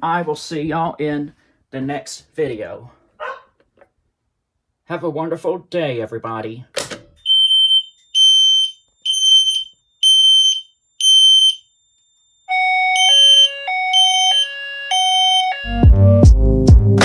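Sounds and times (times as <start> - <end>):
fire alarm horn beeping: 7.2 - 11.7, 12.4 - 15.9
two-pitch electronic tone: 12.5 - 16.2
music with heavy beat: 15.7 - 17.0.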